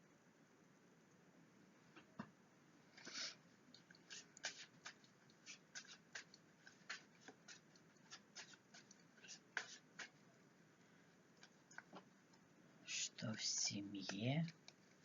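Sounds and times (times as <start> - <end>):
cards sliding and tapping: 4.1 - 10.2.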